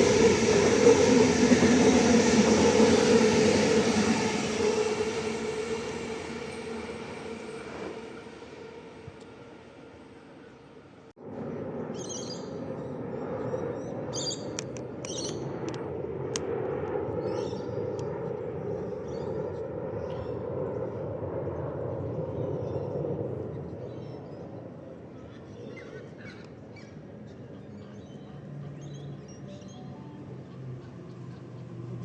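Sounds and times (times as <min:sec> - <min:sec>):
birds chirping: 0:13.2 - 0:15.6.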